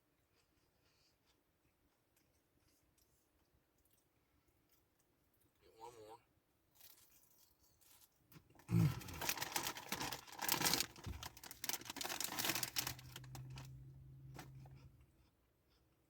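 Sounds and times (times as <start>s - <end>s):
chip bag crinkling and rustling: 6.7s - 14.8s.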